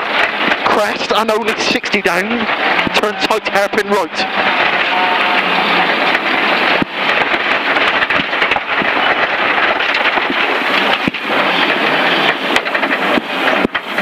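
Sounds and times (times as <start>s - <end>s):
stones rattling against car underbody: 5.8s - 14.0s.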